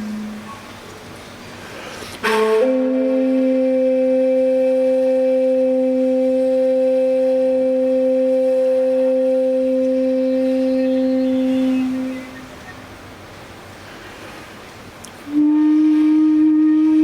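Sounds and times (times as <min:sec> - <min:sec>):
low wind instrument drone: 0:00.0 - 0:00.6, 0:02.2 - 0:12.7, 0:15.3 - 0:17.0.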